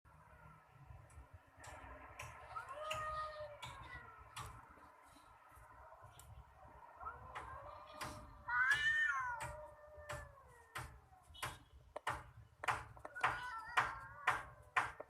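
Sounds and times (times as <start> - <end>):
cats yowling and meowing: 2.5 - 4.6, 7.0 - 11.3, 13.1 - 15.0.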